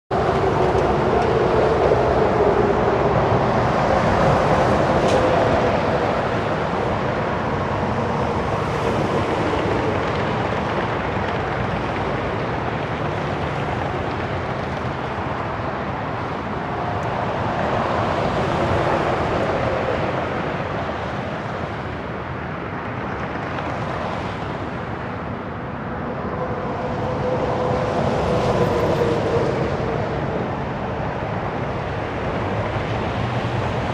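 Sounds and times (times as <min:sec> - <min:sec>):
heavy highway traffic: 0:00.1 - 0:33.9.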